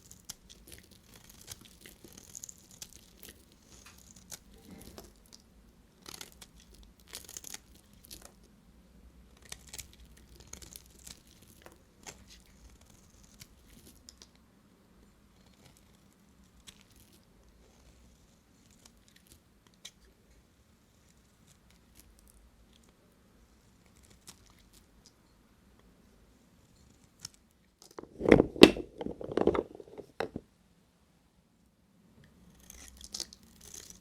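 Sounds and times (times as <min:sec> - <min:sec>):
bar soap crackling and snapping: 0:00.0 - 0:08.4, 0:09.3 - 0:14.3, 0:27.0 - 0:30.4, 0:32.5 - 0:34.0.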